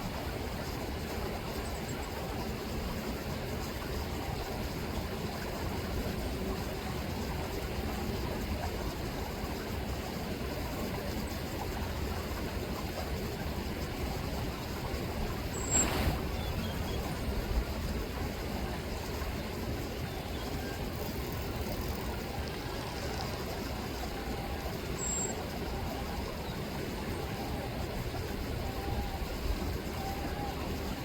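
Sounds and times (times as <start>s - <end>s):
river water rushing: 14.8s - 17.6s.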